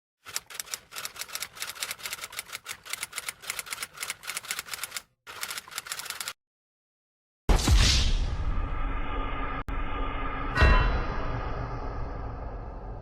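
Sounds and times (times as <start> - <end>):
rapid keyboard typing: 0.2 - 6.4.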